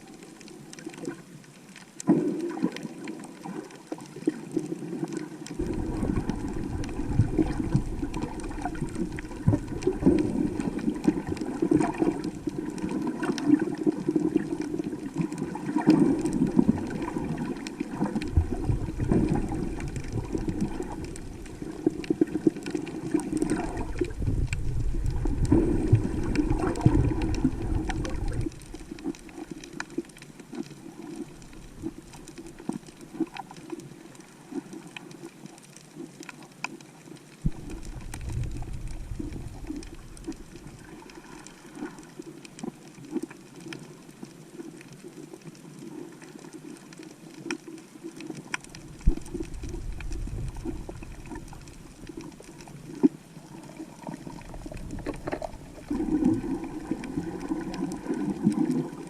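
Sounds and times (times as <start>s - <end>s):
faint crackling: 0.0s - 59.0s
seawater sloshing and gurgling: 2.0s - 33.8s, 37.4s - 43.6s, 44.4s - 59.0s
low rumble: 23.9s - 28.8s, 37.5s - 40.6s, 49.1s - 51.8s.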